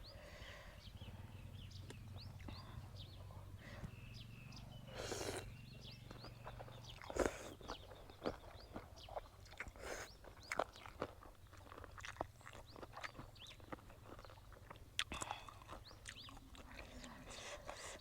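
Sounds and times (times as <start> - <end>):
small birds chirping: 0.0 - 18.0
chewing and biting: 4.9 - 18.0.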